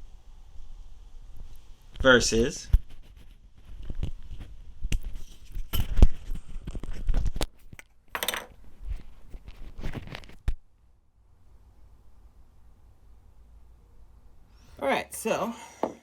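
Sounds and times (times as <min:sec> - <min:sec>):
microphone handling clicks and knocks: 0:02.7 - 0:10.6.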